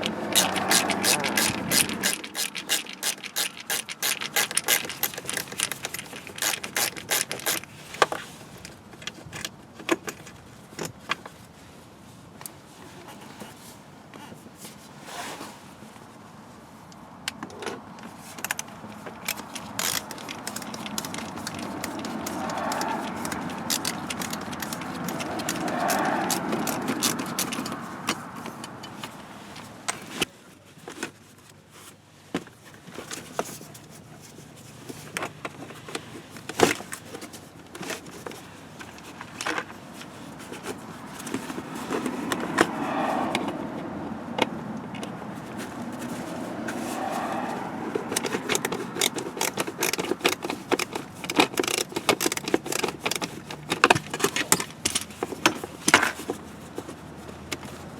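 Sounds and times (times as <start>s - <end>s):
metal tools clicking and jingling: 0.0s - 7.7s, 17.6s - 30.2s, 46.9s - 56.3s.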